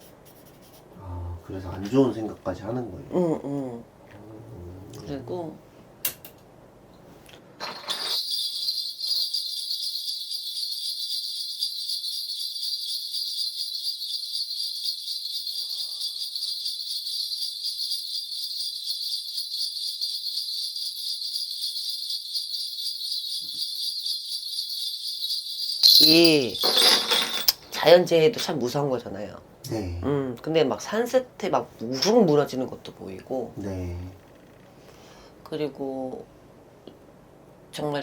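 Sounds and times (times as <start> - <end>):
small metal bells shaken: 7.6 - 27.8.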